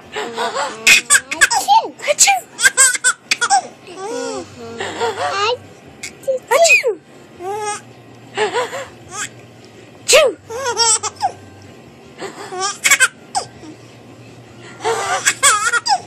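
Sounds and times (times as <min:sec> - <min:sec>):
baby giggling: 0:00.3 - 0:01.9, 0:02.6 - 0:06.3, 0:12.2 - 0:13.6, 0:14.8 - 0:16.0.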